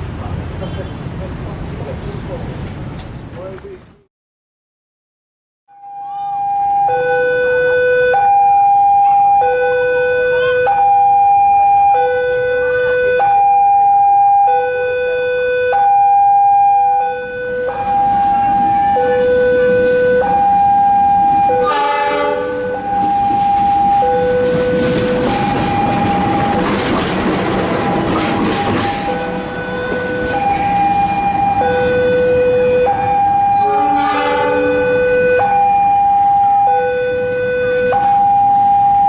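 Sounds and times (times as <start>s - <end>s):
level crossing warning alarm: 5.7s - 39.0s
approaching train: 15.8s - 39.0s.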